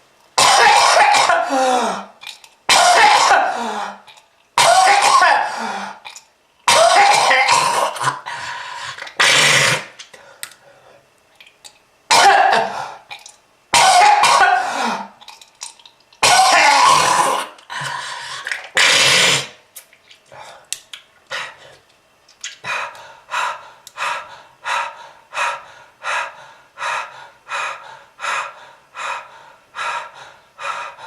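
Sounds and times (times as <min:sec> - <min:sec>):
person coughing hard: 0:00.4 - 0:02.1, 0:02.7 - 0:04.0, 0:04.6 - 0:05.7, 0:06.7 - 0:08.3, 0:12.1 - 0:13.0, 0:13.8 - 0:15.2, 0:16.2 - 0:17.6.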